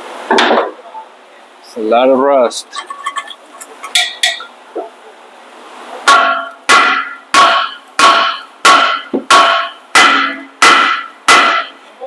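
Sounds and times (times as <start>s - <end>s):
hammer striking metal rotor: 3.9s - 4.5s, 6.1s - 11.8s.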